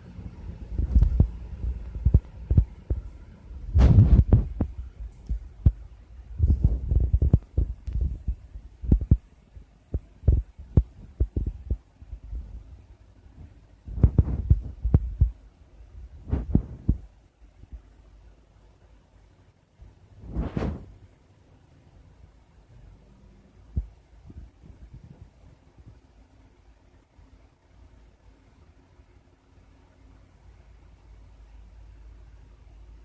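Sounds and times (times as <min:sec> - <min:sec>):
low thuds and knocks: 0:03.7 - 0:09.3.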